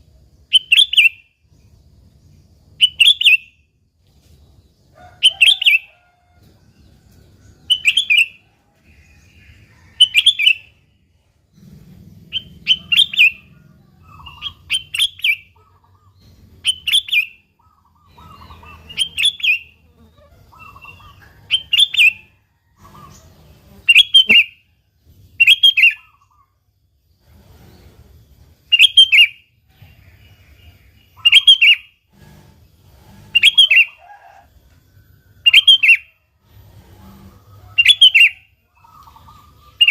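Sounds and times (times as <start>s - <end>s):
bulbul chirping phrases: 11.6s - 22.2s.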